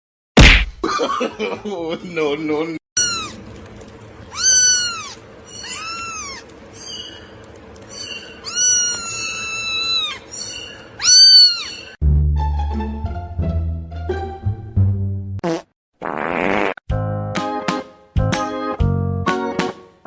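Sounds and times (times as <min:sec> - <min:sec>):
cat meowing: 0:03.0 - 0:03.4, 0:04.3 - 0:06.5, 0:08.0 - 0:12.0.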